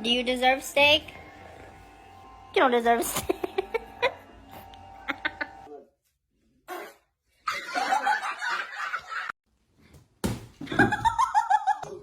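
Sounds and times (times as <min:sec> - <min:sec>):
person laughing: 0:03.0 - 0:04.2.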